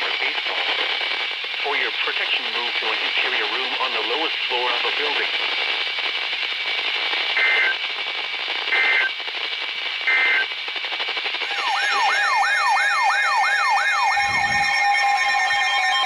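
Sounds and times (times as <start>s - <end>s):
radio hiss: 0.0s - 7.8s
siren-like alarm tone: 11.4s - 16.0s
two-tone data bursts: 11.4s - 16.0s.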